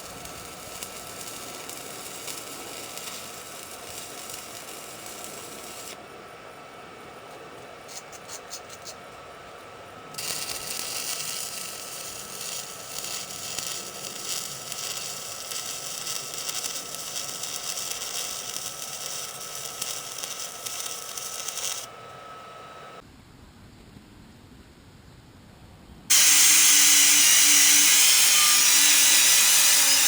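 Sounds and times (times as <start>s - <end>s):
welding arc crackling: 0.0s - 6.0s, 10.1s - 23.0s, 26.1s - 30.0s.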